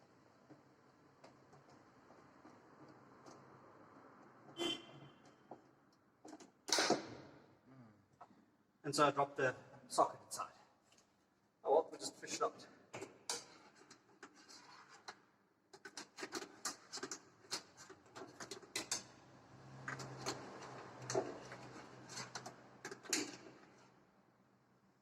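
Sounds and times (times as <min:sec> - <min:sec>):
small metallic clicks and knocks: 0:15.0 - 0:19.2, 0:19.8 - 0:23.8.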